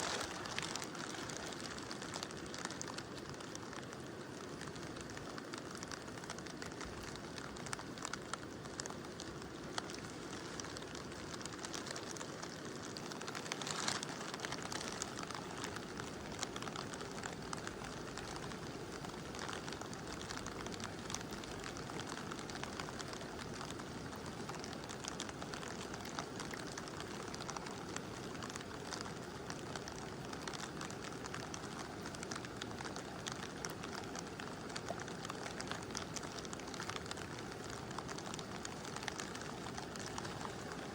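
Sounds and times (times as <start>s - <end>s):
river rushing: 0.0s - 3.7s
raindrops pattering: 0.0s - 40.9s.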